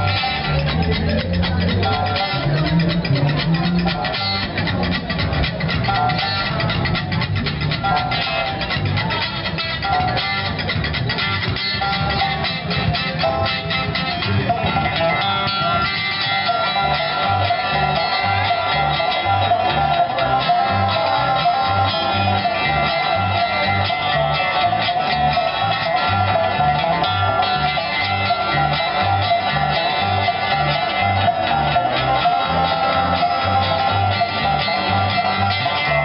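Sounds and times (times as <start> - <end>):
bluegrass band playing: 0.0 - 36.0.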